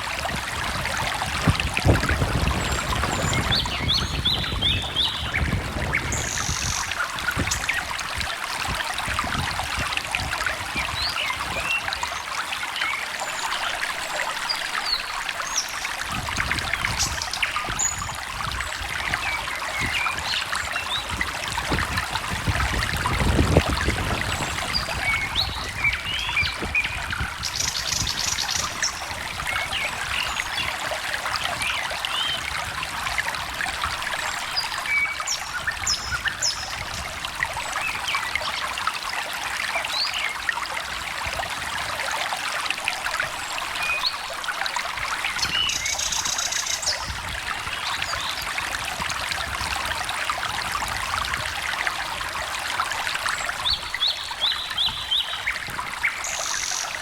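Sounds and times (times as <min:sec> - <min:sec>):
stream trickling and babbling: 0:00.0 - 0:57.0
birds chirping: 0:02.6 - 0:07.9.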